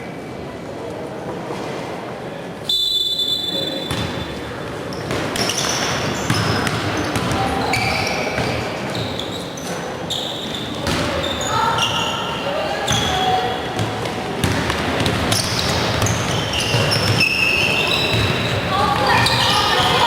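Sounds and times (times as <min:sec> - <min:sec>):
echoing voices in hall: 0:00.0 - 0:20.0
shoe squeals: 0:02.6 - 0:14.0, 0:15.3 - 0:20.0.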